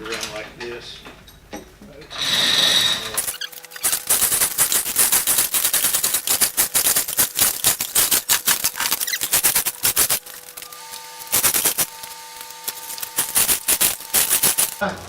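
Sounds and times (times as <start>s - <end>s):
metal parts clacking and rattling: 2.1s - 14.9s.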